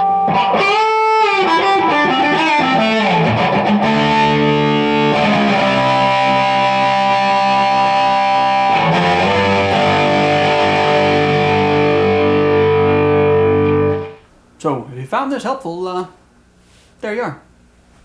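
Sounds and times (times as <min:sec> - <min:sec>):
electric guitar chords and bends: 0:00.0 - 0:14.2.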